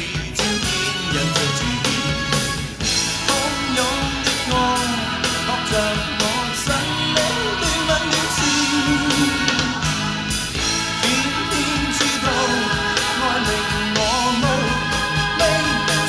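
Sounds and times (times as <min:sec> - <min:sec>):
person singing: 0:00.0 - 0:02.6, 0:03.2 - 0:10.2, 0:11.0 - 0:16.0
drums: 0:00.0 - 0:16.0
guitar: 0:00.0 - 0:16.0.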